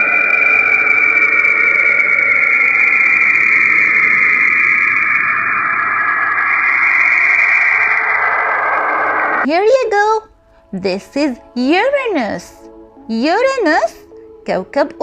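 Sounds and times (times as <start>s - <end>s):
eerie hissing drone: 0.0s - 9.5s
high-pitched held tones: 0.0s - 9.5s.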